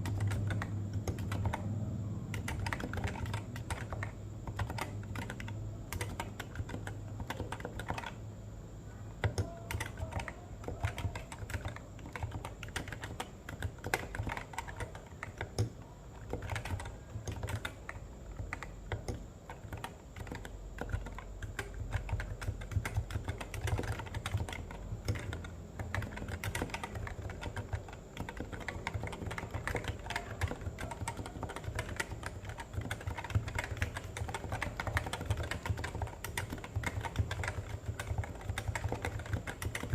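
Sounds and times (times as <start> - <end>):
keyboard typing: 0.0 - 8.2, 9.2 - 39.9.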